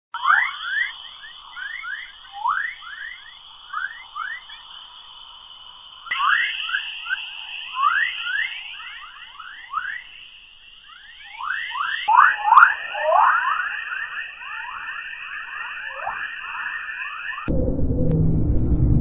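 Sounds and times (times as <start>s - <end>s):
steady high hiss: 0.2s - 17.5s
chirping tones sweeping in pitch: 10.9s - 17.5s.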